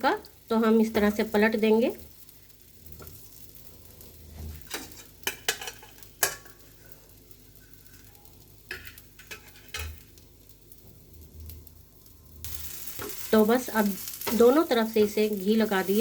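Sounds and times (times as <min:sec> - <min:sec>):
flatbread sizzling on griddle: 0:00.0 - 0:16.0
scrapes and knocks on griddle: 0:04.3 - 0:06.6, 0:08.7 - 0:10.1.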